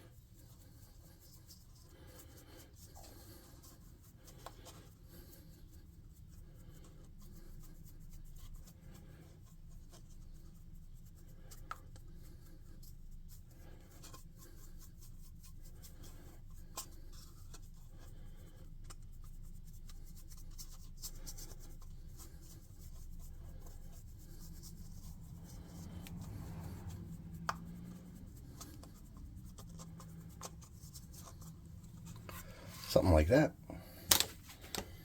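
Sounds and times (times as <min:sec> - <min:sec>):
faint low room hum: 0:00.0 - 0:35.0
paintbrush scratching and dabbing: 0:00.1 - 0:35.0.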